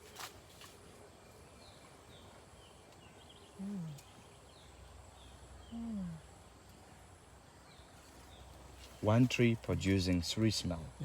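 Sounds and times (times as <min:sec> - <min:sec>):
small birds chirping: 0:00.0 - 0:11.0
person humming low: 0:03.6 - 0:04.1, 0:05.7 - 0:06.3.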